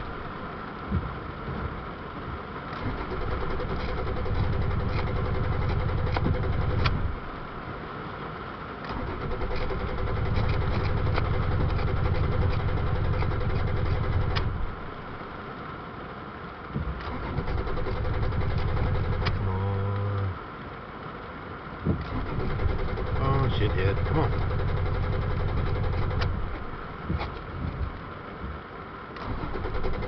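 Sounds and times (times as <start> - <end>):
engine starter cranking: 2.8 - 7.1, 8.9 - 14.8, 17.0 - 19.6, 22.0 - 26.7, 29.2 - 30.0.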